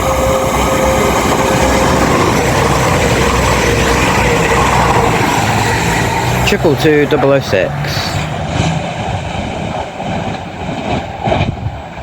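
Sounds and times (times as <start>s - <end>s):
diesel train passing through: 0.0s - 12.0s.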